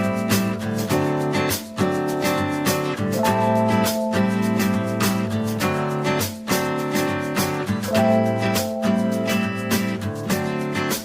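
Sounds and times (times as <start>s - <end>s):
strummed acoustic guitar: 0.0s - 11.0s.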